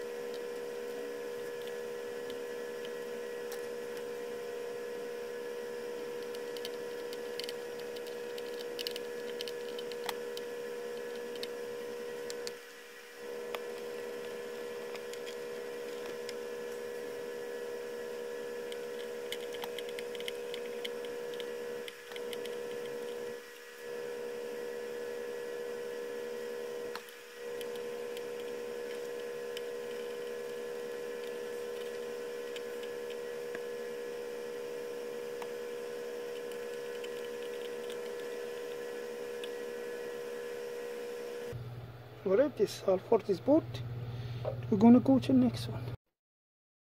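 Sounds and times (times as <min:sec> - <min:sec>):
electrical hum: 0:00.0 - 0:46.0
soldering ticks and crackles: 0:00.2 - 0:04.2, 0:05.8 - 0:12.8, 0:13.4 - 0:17.2, 0:18.0 - 0:24.2, 0:26.8 - 0:40.0.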